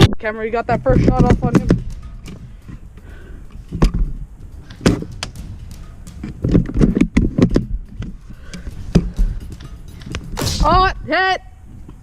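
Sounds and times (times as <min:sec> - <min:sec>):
airsoft rifle shots: 0:10.3 - 0:11.0.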